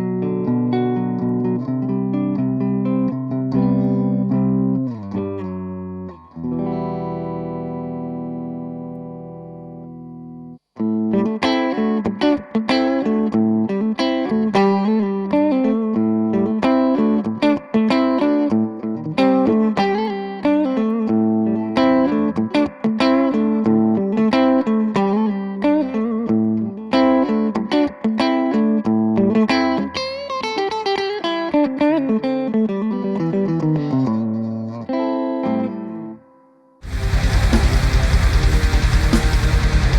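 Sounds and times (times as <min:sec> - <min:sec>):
electric guitar chord ringing: 0:00.0 - 0:39.9
electric guitar riff: 0:00.0 - 0:39.9.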